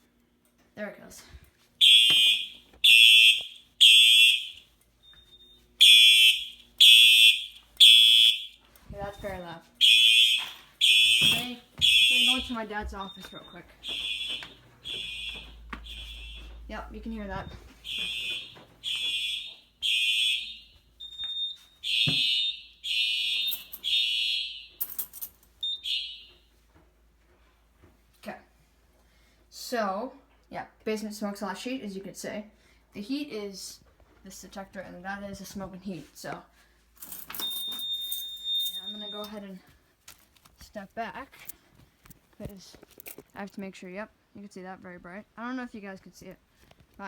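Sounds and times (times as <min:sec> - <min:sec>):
fire alarm horn blasts: 0:01.8 - 0:25.0, 0:25.6 - 0:26.6, 0:37.4 - 0:39.7.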